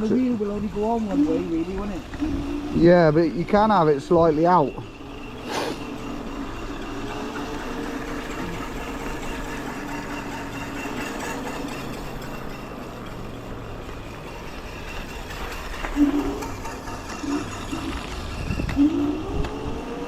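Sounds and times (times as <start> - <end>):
brake disc rubbing on pads: 0.0 - 19.8
electric scooter motor hum: 0.0 - 20.0
wind: 0.0 - 20.0.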